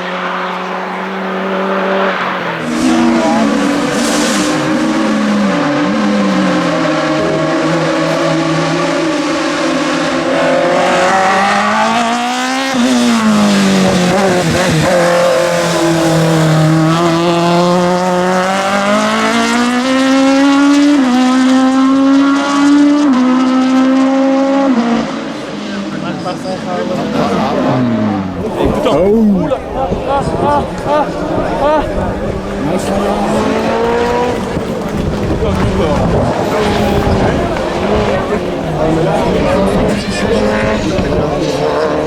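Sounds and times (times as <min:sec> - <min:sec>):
racing car engine accelerating: 0:00.0 - 0:42.0.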